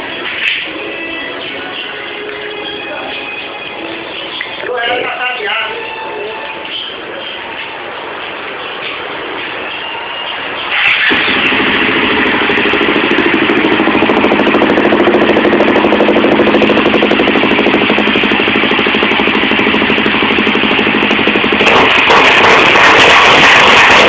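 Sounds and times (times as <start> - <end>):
motorcycle engine idling: 11.1 - 24.0.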